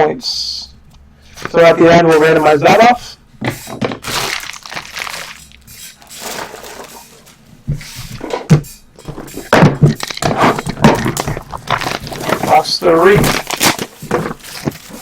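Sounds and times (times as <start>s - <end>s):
packaging crinkling and tearing: 4.0s - 7.4s, 10.0s - 15.0s.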